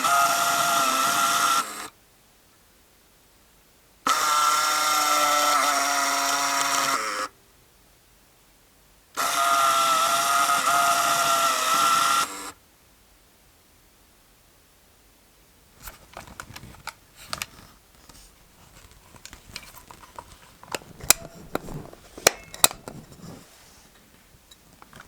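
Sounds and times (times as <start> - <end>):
cine camera motor whine: 0.0 - 1.9, 4.1 - 7.3, 9.2 - 12.6.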